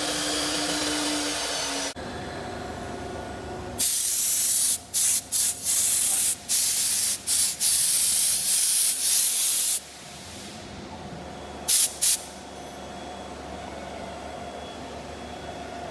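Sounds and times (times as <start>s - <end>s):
compressed air hissing: 3.8s - 10.7s, 11.7s - 12.4s
faint machine hum: 9.8s - 15.9s.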